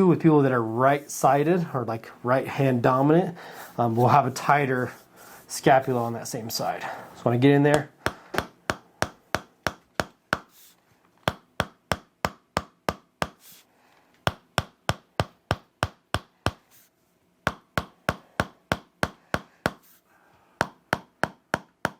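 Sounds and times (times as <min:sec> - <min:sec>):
wooden mallet tapping chisel: 0:07.7 - 0:10.5, 0:11.2 - 0:13.4, 0:17.5 - 0:19.8, 0:20.6 - 0:21.9.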